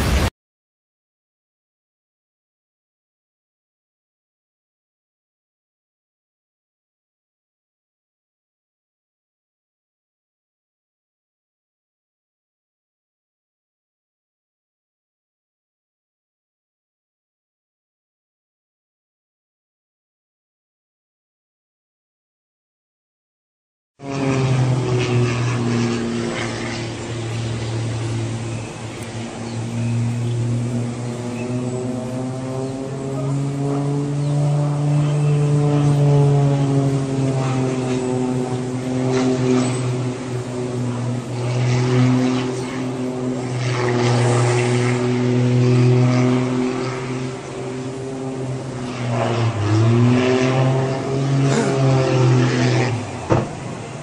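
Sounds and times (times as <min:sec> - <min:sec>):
hissy gusts: 0:00.0 - 0:00.3
propeller aircraft engine drone: 0:00.0 - 0:00.3, 0:24.0 - 0:54.0.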